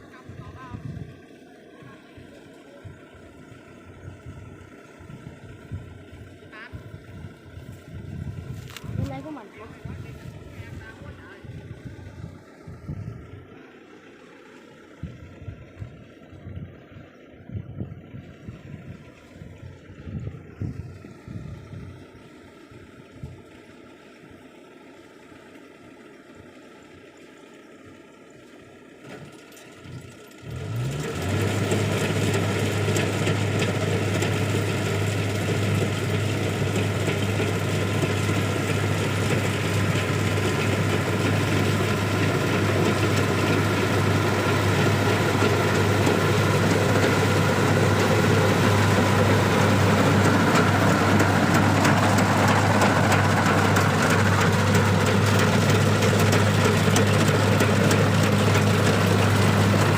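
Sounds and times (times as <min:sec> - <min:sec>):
combine harvester engine hum: 0:00.0 - 0:59.9
dense mechanical noise: 0:27.7 - 0:59.9.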